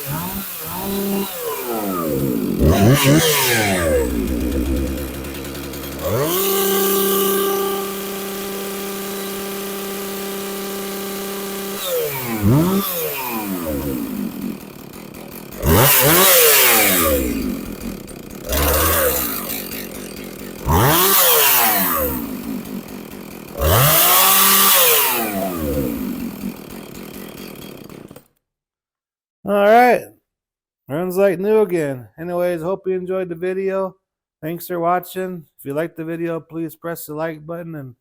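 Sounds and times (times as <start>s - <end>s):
chainsaw idling and revving: 0.0s - 28.3s.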